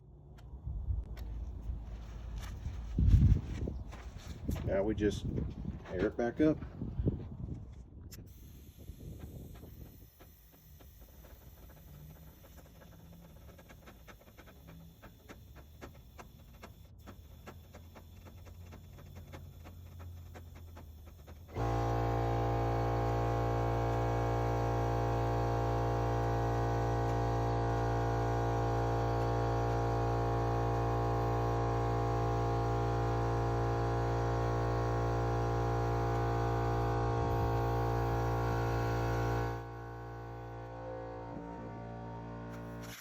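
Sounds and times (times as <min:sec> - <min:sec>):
air compressor motor running: 0:08.2 - 0:43.0.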